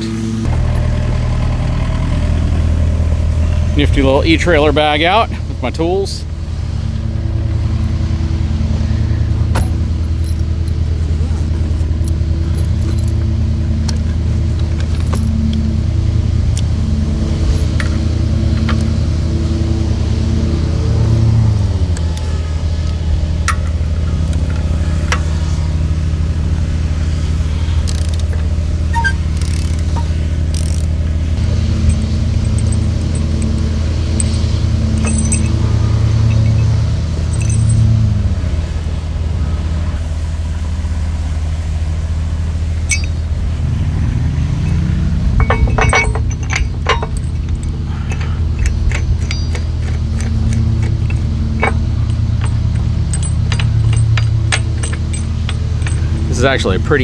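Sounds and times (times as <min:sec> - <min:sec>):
engine idling: 0:00.0 - 0:57.0
sharp metallic clinks: 0:31.6 - 0:38.0, 0:42.8 - 0:43.3, 0:44.6 - 0:57.0.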